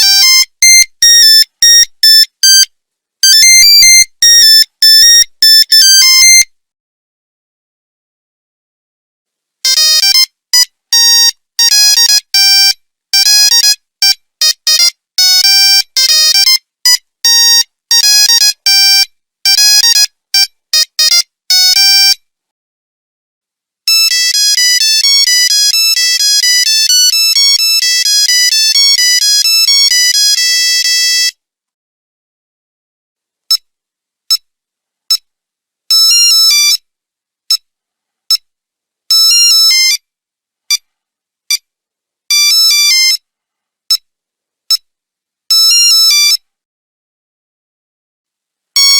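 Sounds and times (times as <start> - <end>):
monophonic ringtone beeps: 0.0 - 6.4.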